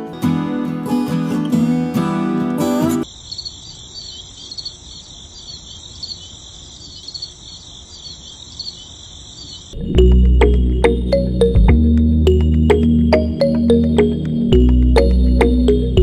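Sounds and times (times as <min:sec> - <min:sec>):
acoustic guitar music: 0:00.0 - 0:03.0, 0:09.8 - 0:16.0
crickets chirping: 0:03.0 - 0:10.3.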